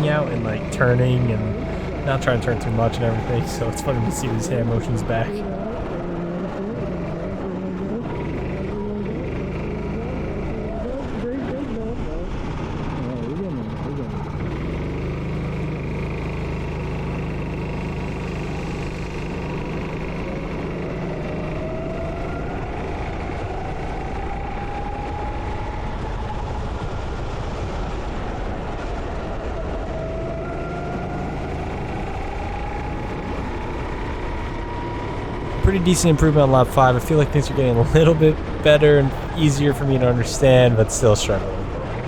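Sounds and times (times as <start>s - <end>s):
go-kart engine running: 0.0s - 27.3s
road noise: 0.0s - 42.0s
wind: 0.0s - 42.0s.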